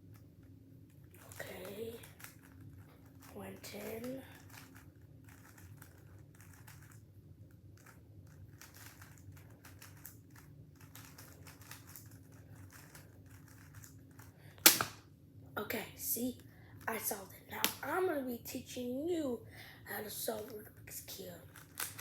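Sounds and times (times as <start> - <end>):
puzzle cube clicking and rattling: 1.0 - 15.0, 20.4 - 22.0.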